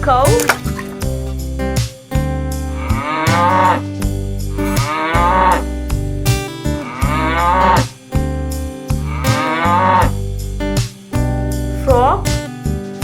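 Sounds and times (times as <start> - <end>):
background music: 0.0 - 13.0
cow mooing: 2.7 - 3.9, 4.5 - 5.8, 6.8 - 8.0, 9.0 - 10.2.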